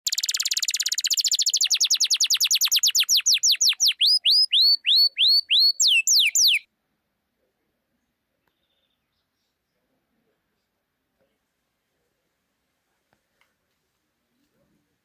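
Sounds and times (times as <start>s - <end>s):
bird trilling song: 0.1s - 6.7s.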